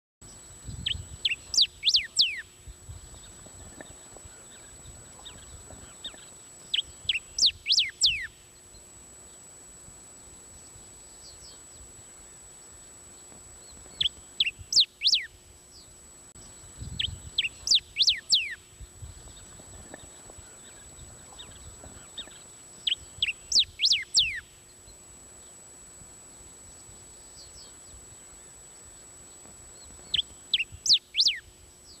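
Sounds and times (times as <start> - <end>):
faint high-pitched whine: 0.2 - 32.0
songbird whistling: 0.8 - 2.5, 6.0 - 8.4, 13.9 - 15.3, 16.4 - 18.6, 22.2 - 24.5, 30.0 - 32.0.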